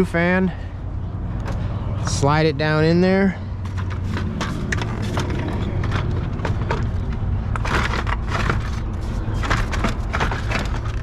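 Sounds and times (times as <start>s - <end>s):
plastic shroud scraping and knocking: 3.6s - 11.0s.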